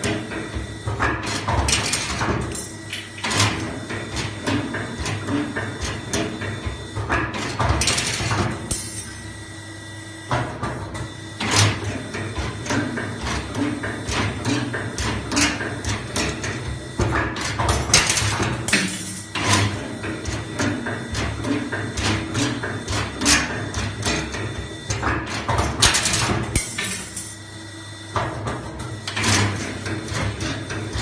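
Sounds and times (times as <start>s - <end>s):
mechanical clicks and clacks: 0.0s - 9.0s, 11.4s - 27.1s.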